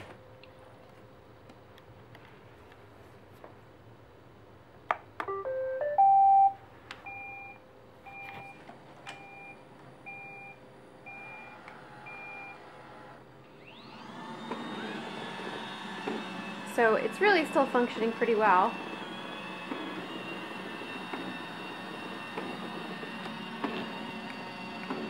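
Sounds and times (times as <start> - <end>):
short beeps: 5.3 - 8.6
vacuum motor whine: 10.8 - 25.0.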